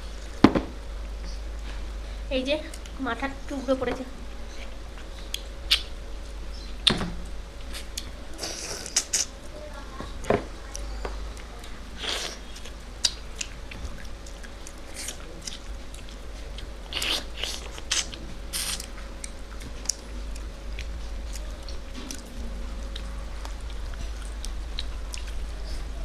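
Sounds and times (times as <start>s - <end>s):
chewing and crunching: 10.6s - 26.0s.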